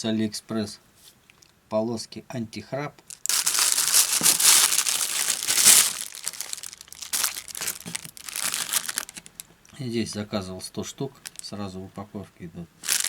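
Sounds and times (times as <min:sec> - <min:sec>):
packaging crinkling: 0:03.1 - 0:09.6, 0:11.2 - 0:11.5, 0:12.8 - 0:13.0.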